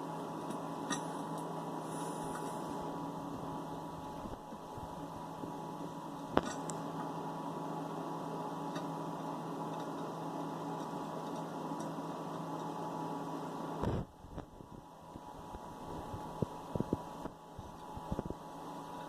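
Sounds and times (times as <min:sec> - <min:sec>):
mechanical hum: 0:00.0 - 0:19.0.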